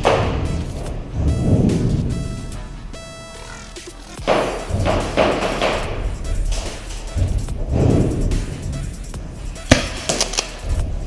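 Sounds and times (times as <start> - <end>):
thumping beats: 3.9 - 11.0.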